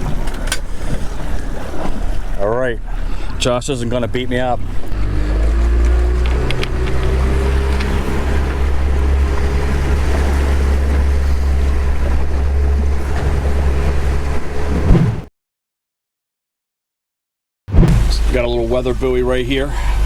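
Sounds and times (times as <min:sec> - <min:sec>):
wind and water hiss: 0:00.0 - 0:14.8, 0:17.9 - 0:20.0
boat engine running: 0:00.0 - 0:15.3, 0:17.8 - 0:20.0.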